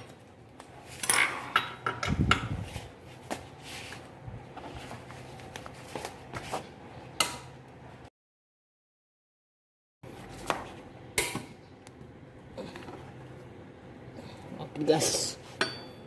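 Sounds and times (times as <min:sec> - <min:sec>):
wrench clinking and scraping on bolts: 0:00.8 - 0:02.5.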